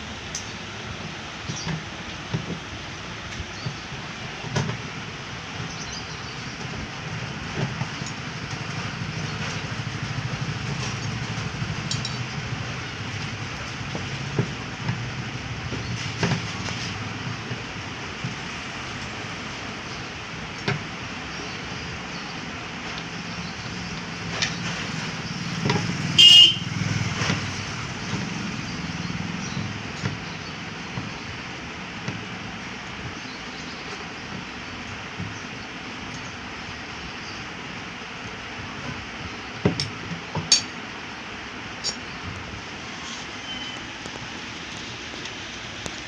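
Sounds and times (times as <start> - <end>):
road traffic hum: 0.0 - 46.0
mechanical rumble with flutter: 3.4 - 37.8
vehicle horn toot: 26.2 - 26.8.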